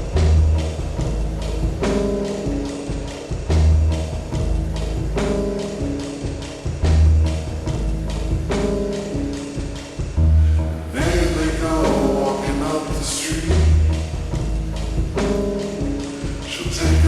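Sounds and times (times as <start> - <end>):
deep sustained bass notes: 0.0 - 2.6, 3.5 - 6.0, 6.7 - 9.2, 10.2 - 17.0
slowed reverb-heavy pop song: 8.7 - 17.0
person singing: 10.8 - 13.8, 16.1 - 17.0.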